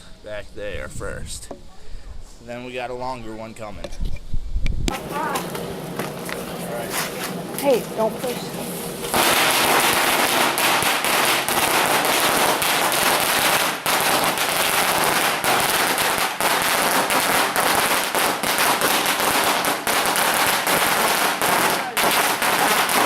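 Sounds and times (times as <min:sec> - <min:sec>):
firecrackers banging: 0:04.9 - 0:23.0.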